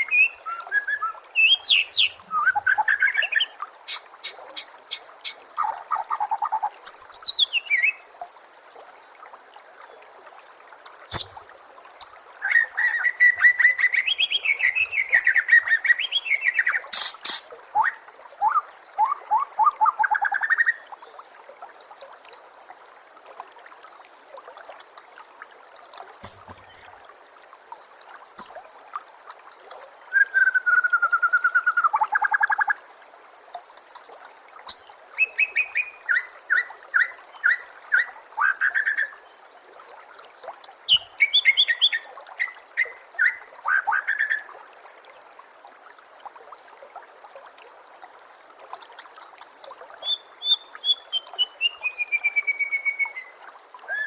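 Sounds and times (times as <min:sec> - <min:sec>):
bird singing trills and whistles: 0:00.0 - 0:03.5, 0:04.9 - 0:08.0, 0:12.4 - 0:20.8, 0:26.2 - 0:26.9, 0:28.4 - 0:28.6, 0:30.1 - 0:32.7, 0:35.2 - 0:39.2, 0:40.9 - 0:44.4, 0:50.0 - 0:53.3
trickling water: 0:00.0 - 0:54.0.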